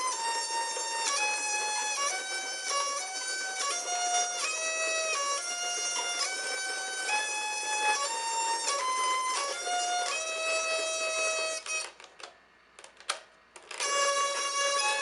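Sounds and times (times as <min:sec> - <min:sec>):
buzzy hurdy-gurdy notes: 0:00.0 - 0:12.0, 0:13.8 - 0:15.0.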